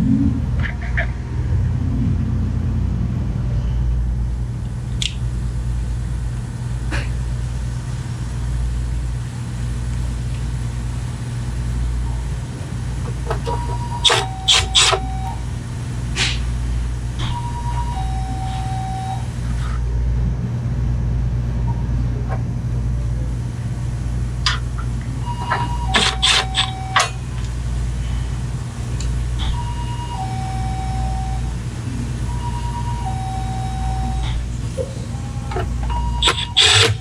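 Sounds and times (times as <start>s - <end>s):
steady low hum: 0.0s - 37.0s
hands fitting parts clicking: 13.3s - 15.1s, 25.9s - 26.8s, 35.5s - 37.0s.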